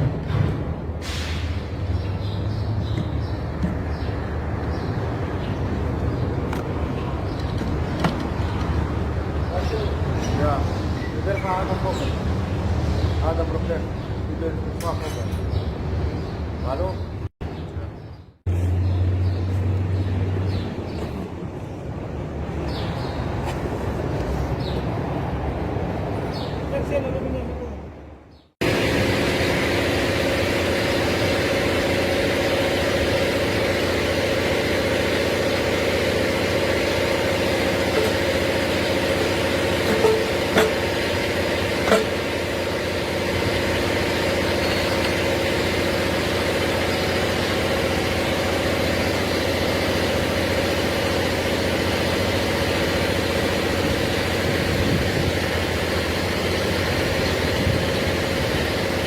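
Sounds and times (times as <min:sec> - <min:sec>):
forklift engine idling: 0:28.6 - 0:59.0.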